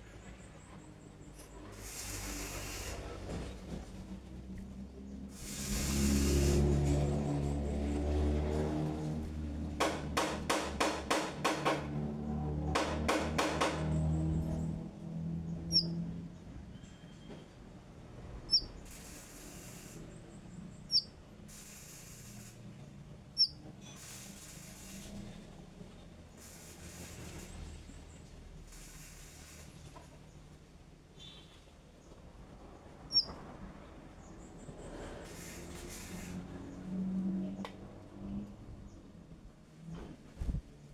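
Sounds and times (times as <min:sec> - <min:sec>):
hiss: 0:01.6 - 0:03.8, 0:05.3 - 0:07.2, 0:18.5 - 0:25.6, 0:26.3 - 0:30.2, 0:34.9 - 0:36.8.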